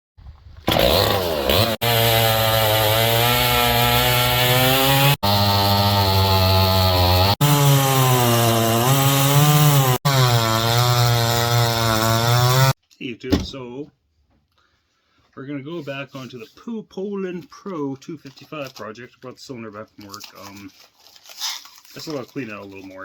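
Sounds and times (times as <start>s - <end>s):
chainsaw cutting wood: 0.6s - 12.8s.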